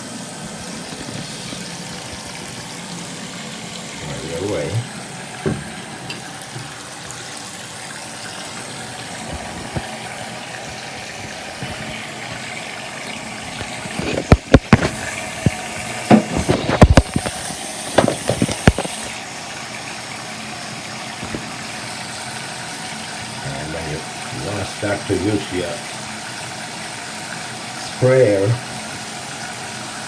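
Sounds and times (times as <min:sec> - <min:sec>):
faucet water running: 0:00.0 - 0:30.0
sharp clicks and knocks: 0:13.6 - 0:19.1.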